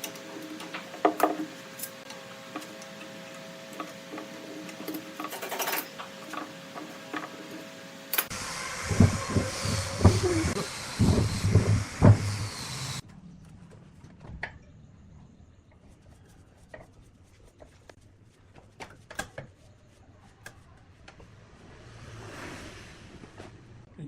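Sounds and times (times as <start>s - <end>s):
wood cutting on a lathe: 8.3s - 13.0s.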